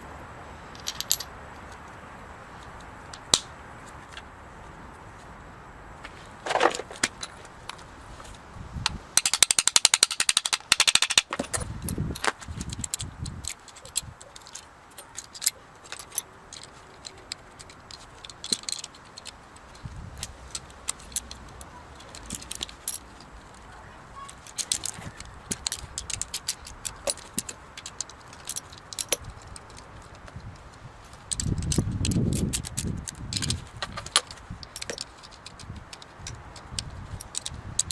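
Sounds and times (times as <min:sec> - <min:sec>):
metal tools clinking and rattling: 0:00.7 - 0:01.3, 0:09.2 - 0:30.3, 0:31.2 - 0:37.9
fast clicks: 0:08.8 - 0:23.0.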